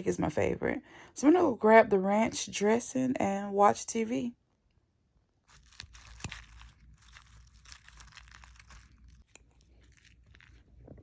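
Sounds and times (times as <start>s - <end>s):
packaging crinkling and tearing: 5.5s - 10.9s.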